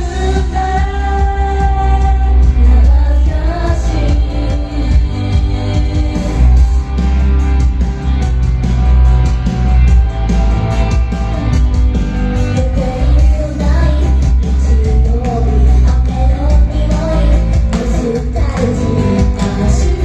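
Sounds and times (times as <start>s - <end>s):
vocalist singing: 0.0s - 6.9s, 12.6s - 20.0s
live rock band playing: 0.0s - 20.0s.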